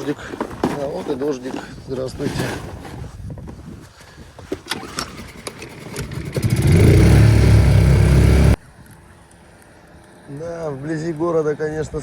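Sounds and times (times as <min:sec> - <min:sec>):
motorboat engine running: 0:05.7 - 0:08.6.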